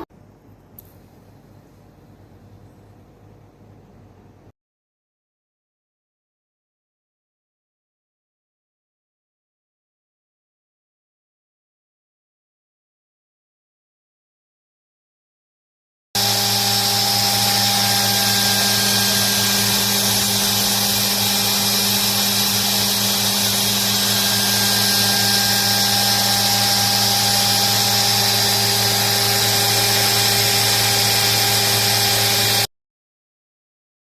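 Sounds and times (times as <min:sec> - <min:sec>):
motor spindle humming and whining: 0:16.2 - 0:32.7.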